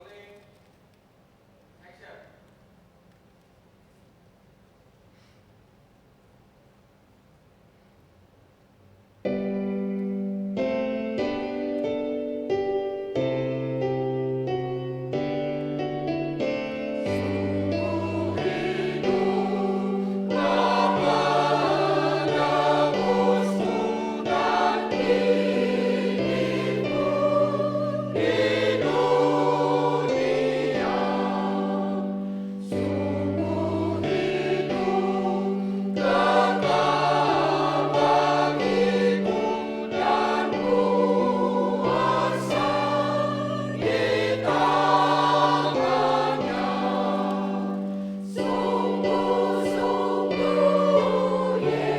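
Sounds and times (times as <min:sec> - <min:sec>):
church choir singing: 0:10.6 - 0:51.9.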